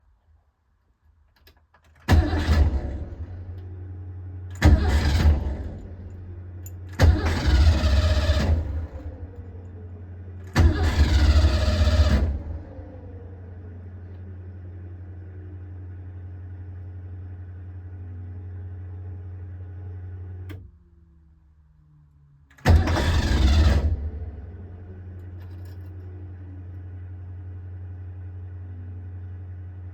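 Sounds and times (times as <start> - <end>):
click: 1.3 - 2.0, 6.6 - 6.8, 20.4 - 20.7
starter cranking engine: 2.0 - 3.4, 4.5 - 6.2, 6.9 - 9.3, 10.4 - 12.8, 22.6 - 24.4.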